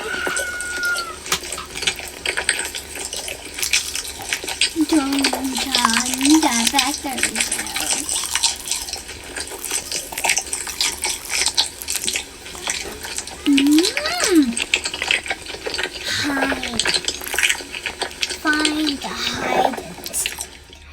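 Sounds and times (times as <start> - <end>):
child squealing: 0.0 - 1.4, 13.5 - 14.6, 16.0 - 16.9
child making mock eating noises: 4.6 - 8.2, 12.1 - 14.9, 15.8 - 17.4, 18.3 - 20.9.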